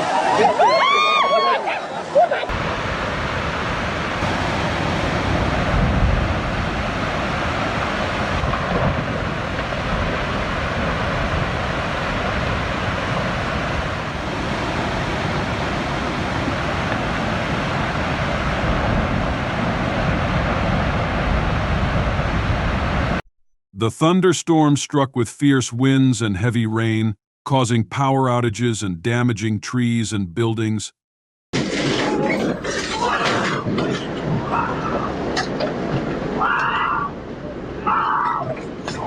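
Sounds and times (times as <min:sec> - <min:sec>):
rushing floodwater: 0:00.0 - 0:23.2, 0:33.0 - 0:39.0
wind noise on microphone: 0:02.5 - 0:23.2.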